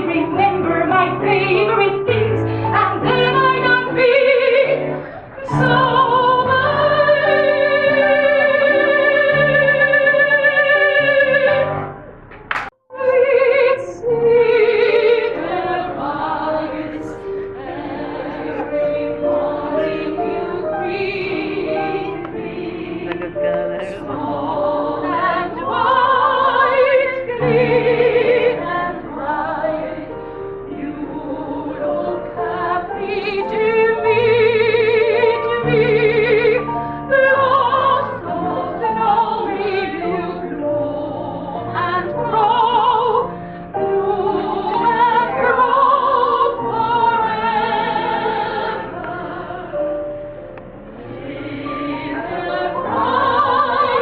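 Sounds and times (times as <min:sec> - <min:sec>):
musical accompaniment: 0:00.0 - 0:54.0
operatic singing with vibrato: 0:12.9 - 0:49.8, 0:50.8 - 0:54.0.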